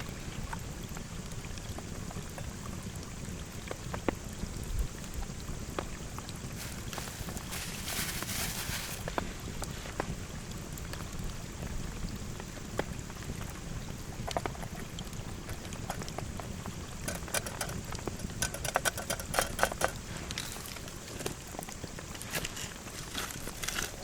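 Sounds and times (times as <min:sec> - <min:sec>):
steady rain: 0:00.0 - 0:24.0
sharp taps of raindrops: 0:12.6 - 0:20.1.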